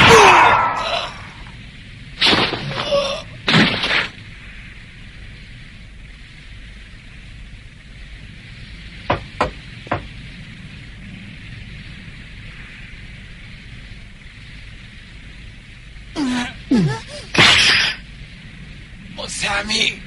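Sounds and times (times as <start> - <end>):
low rumble: 0.0 - 20.0
steady hissing noise: 0.0 - 20.0
sharp knocks: 9.1 - 10.1.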